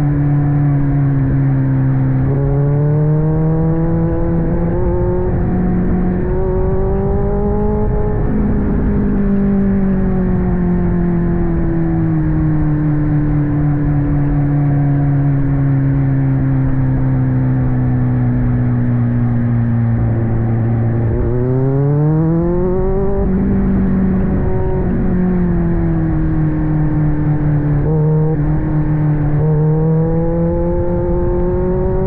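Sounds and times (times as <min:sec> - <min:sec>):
motorcycle engine: 0:00.0 - 0:32.0.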